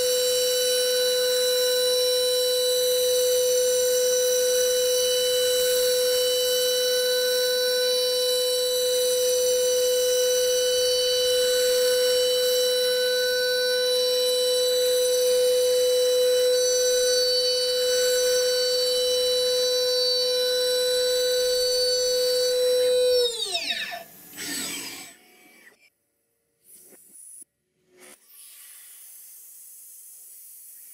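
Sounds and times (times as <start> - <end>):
machine motor whining: 5.6 - 25.8.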